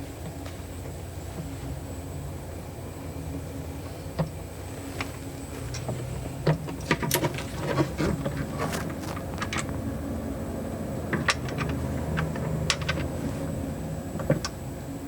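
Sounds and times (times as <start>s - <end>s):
hand tools clicking and knocking: 6.5s - 9.8s, 11.1s - 13.2s.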